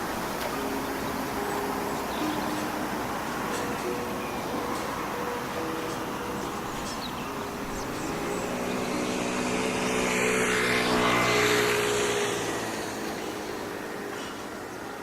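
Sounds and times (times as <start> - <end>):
steady background noise: 0.0 - 15.0
engine passing by: 6.3 - 15.0.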